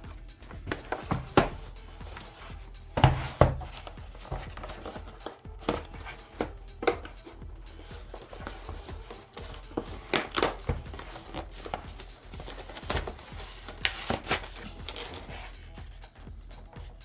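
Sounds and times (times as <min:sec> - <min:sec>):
packaging rustling and scraping: 0:00.0 - 0:16.2.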